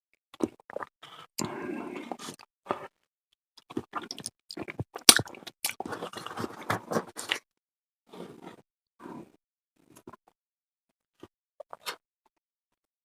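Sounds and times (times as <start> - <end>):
person chewing and biting: 3.8 - 6.6.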